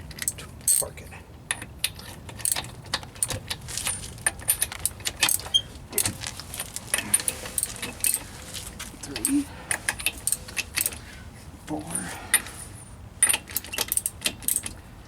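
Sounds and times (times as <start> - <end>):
metallic clinks of tool on nut: 13.2 - 14.8.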